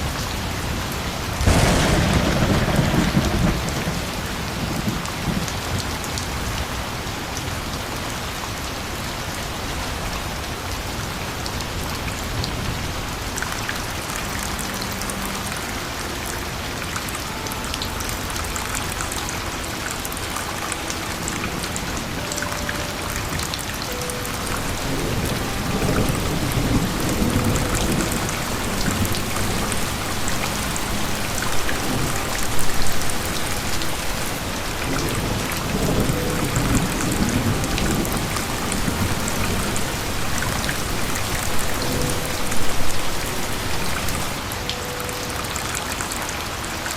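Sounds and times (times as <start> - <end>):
steady rain falling: 0.0 - 46.9
thunder rumbling: 1.3 - 6.6, 11.9 - 44.5.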